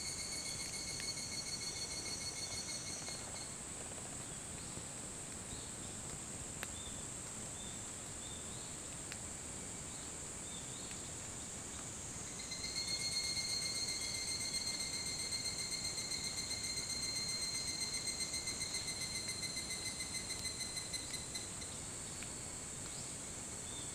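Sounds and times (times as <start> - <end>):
close cicada pulsing trill: 0.0 - 4.3, 9.9 - 23.9
distant cicadas humming: 0.0 - 23.9.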